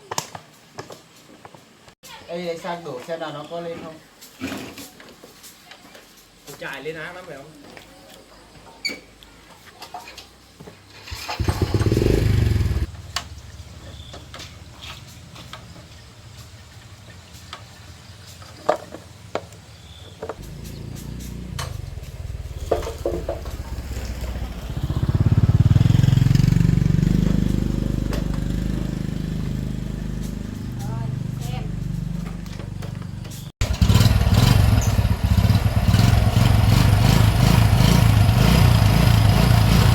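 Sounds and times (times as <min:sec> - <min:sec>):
engine clicks and knocks: 0:11.1 - 0:13.4, 0:20.3 - 0:39.9
motorbike engine running: 0:11.2 - 0:14.8, 0:20.4 - 0:39.9.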